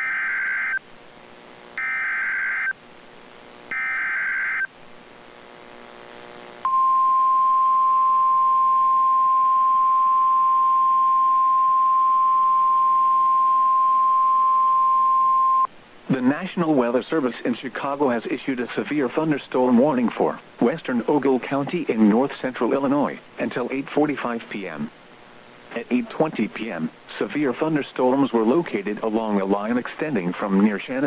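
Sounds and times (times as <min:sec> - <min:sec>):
screechy digital data tones: 0:01.8 - 0:02.8, 0:03.7 - 0:04.7
steady attention tone: 0:01.8 - 0:02.8, 0:06.6 - 0:15.7.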